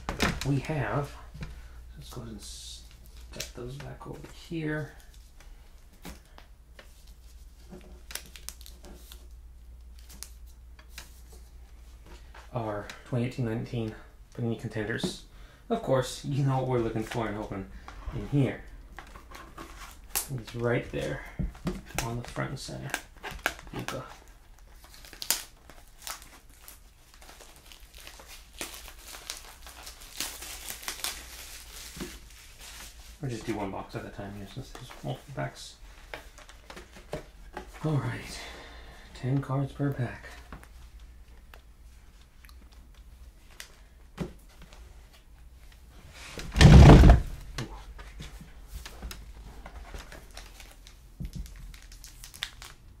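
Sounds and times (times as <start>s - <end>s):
packaging crinkling and rustling: 2.8s - 12.4s, 16.3s - 38.1s, 46.6s - 53.0s
packaging crackles: 7.8s - 10.4s, 22.0s - 32.8s, 49.8s - 53.0s.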